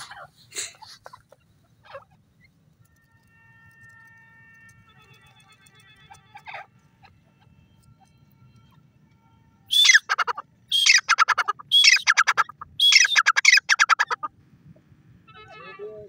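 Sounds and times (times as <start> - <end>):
francolin calling: 9.7 - 14.3.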